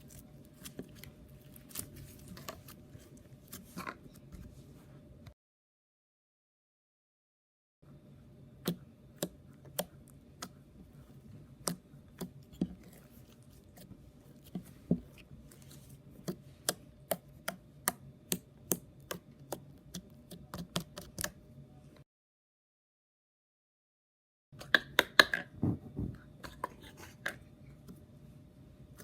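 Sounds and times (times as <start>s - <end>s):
faint steady hum: 0.0s - 5.4s, 7.8s - 22.0s.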